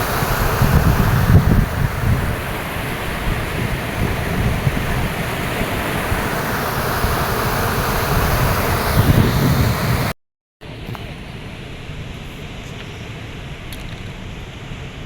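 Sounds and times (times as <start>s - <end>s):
river water rushing: 0.0s - 10.1s
wind buffeting microphone: 0.0s - 10.1s.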